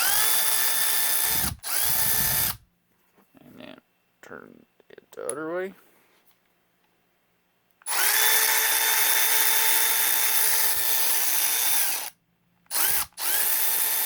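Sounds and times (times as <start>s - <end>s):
cordless ratchet motor running: 0.0s - 2.6s, 7.9s - 12.1s, 12.7s - 14.0s.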